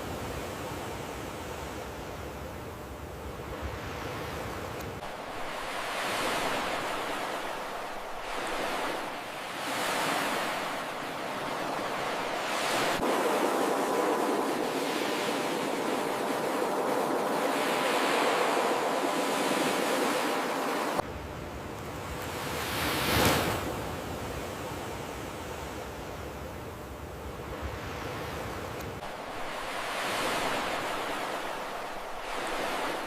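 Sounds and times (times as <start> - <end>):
ocean waves breaking: 3.4 - 21.0, 27.4 - 33.0.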